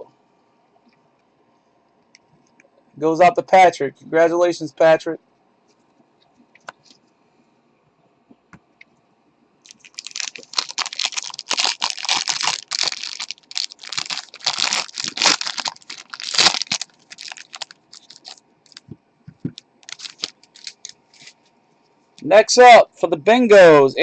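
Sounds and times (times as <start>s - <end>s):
plastic wrapping crumpled and torn: 9.7s - 18.9s, 19.5s - 21.4s.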